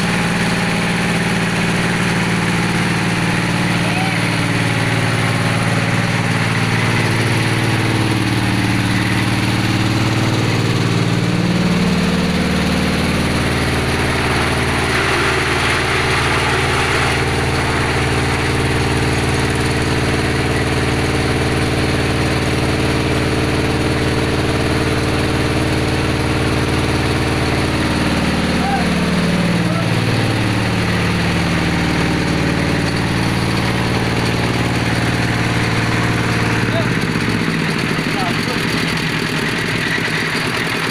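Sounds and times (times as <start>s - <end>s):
drilling machine engine running: 0.0s - 40.9s.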